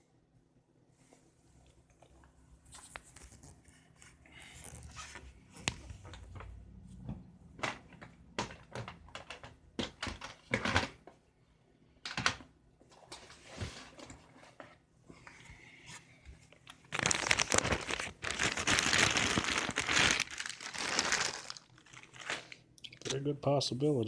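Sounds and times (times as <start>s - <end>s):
rustling boxes and packaging: 12.8s - 22.7s.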